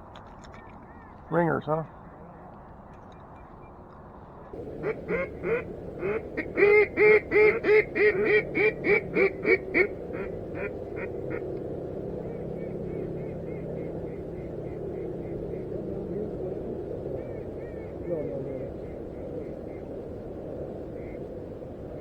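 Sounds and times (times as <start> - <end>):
duck call quacks: 4.8 - 11.1.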